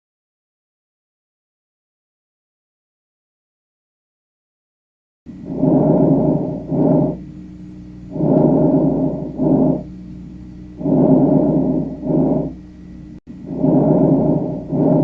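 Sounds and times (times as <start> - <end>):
breath sounds through stethoscope: 5.4 - 7.2, 8.1 - 9.9, 10.8 - 12.6, 13.4 - 15.0.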